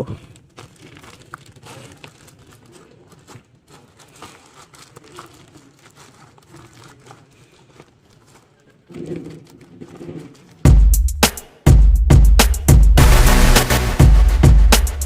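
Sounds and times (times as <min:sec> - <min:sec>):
plastic packaging crinkling: 0:00.3 - 0:09.7.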